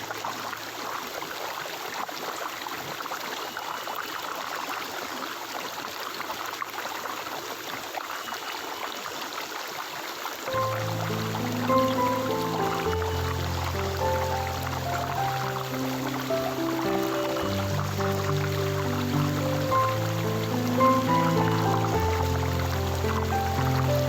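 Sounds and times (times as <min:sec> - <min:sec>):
stream water flowing: 0:00.0 - 0:24.0.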